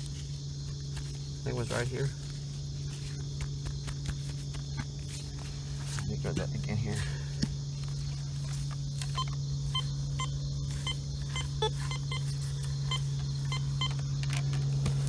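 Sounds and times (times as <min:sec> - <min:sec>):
steady low hum: 0:00.0 - 0:15.0
metal detector beeping: 0:09.0 - 0:14.5.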